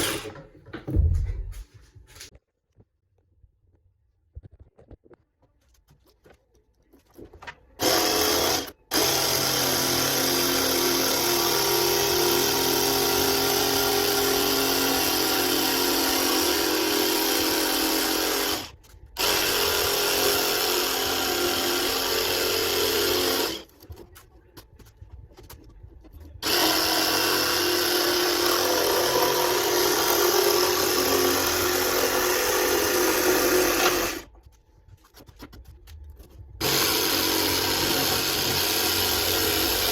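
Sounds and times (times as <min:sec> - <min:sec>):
jigsaw cutting a board: 0:07.8 - 0:23.7, 0:26.4 - 0:34.3, 0:36.6 - 0:39.9.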